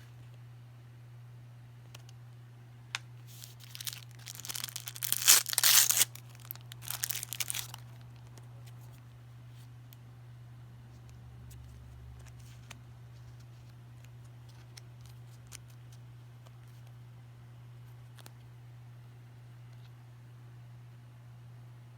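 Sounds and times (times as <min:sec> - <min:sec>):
packaging tearing and crinkling: 0:03.3 - 0:08.0.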